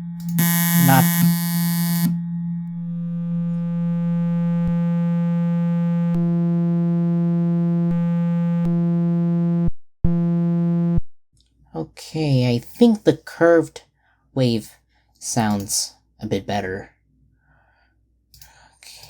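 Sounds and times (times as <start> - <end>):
low steady synthesizer tone: 0.3 - 8.6.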